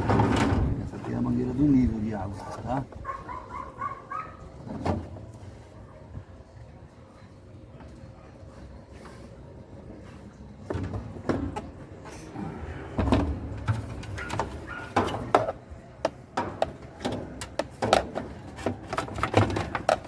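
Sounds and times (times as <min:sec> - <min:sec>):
plastic parts clicking and rattling: 0:13.6 - 0:20.0.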